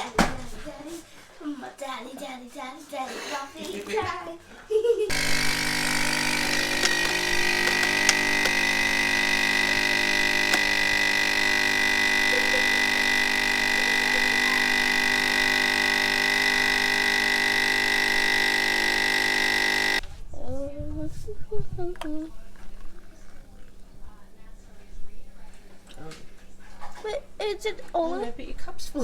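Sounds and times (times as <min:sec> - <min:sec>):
coffee machine humming and whining: 0:05.1 - 0:20.0.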